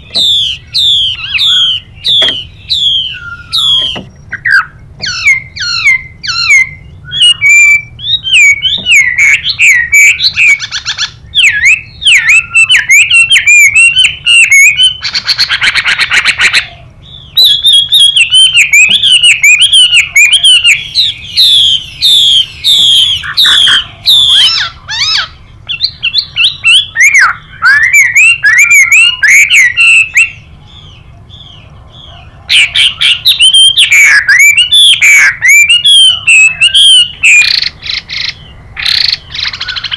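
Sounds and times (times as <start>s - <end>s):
bird singing whistled notes: 0.0s - 39.9s.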